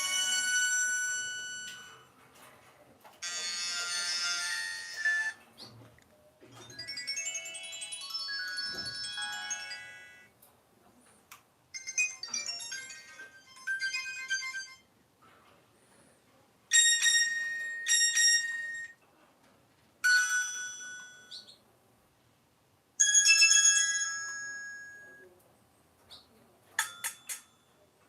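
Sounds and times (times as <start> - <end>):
mobile phone ringtone melody: 0.0 - 2.1, 3.2 - 5.4, 6.5 - 10.3, 11.7 - 14.9, 16.7 - 19.0, 20.0 - 21.6, 23.0 - 25.2
ringing chime phrases: 6.6 - 10.3.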